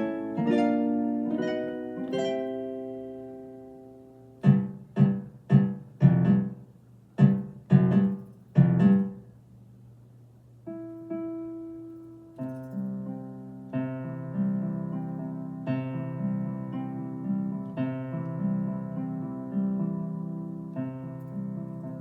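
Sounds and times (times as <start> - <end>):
digital piano plucked chords: 0.0 - 9.4, 10.6 - 22.0
soft held keyboard notes: 10.6 - 22.0.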